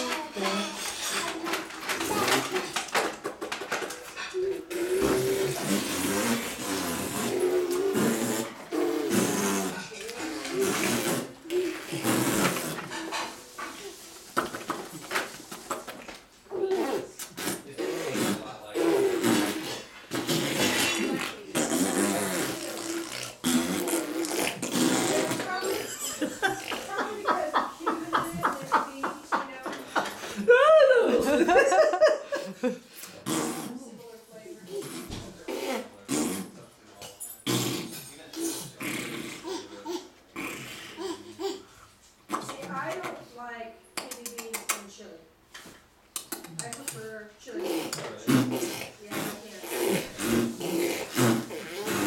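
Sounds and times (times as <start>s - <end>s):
sputtering mouth sounds: 4.4s - 13.2s, 14.4s - 27.0s, 33.0s - 33.8s, 34.7s - 41.7s, 42.3s - 43.2s, 44.0s - 44.8s, 46.1s - 52.0s.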